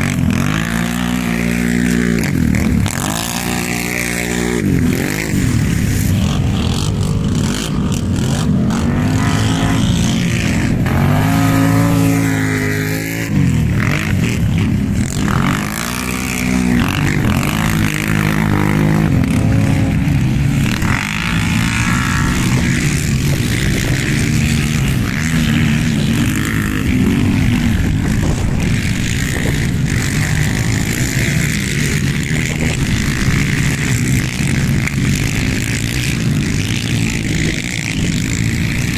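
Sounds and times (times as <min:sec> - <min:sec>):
quad bike engines revving: 0:00.0 - 0:38.9.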